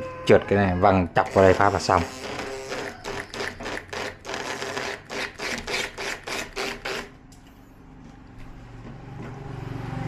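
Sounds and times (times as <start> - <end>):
rhythmic rasping strokes: 1.2 - 7.1.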